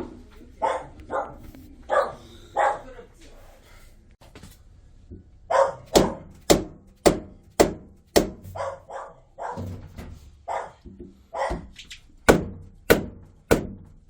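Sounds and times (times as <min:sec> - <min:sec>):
dog barking: 0:00.6 - 0:03.0, 0:05.5 - 0:06.2, 0:08.5 - 0:09.8, 0:10.4 - 0:11.8
sharp knocks: 0:05.9 - 0:08.6, 0:12.3 - 0:14.0.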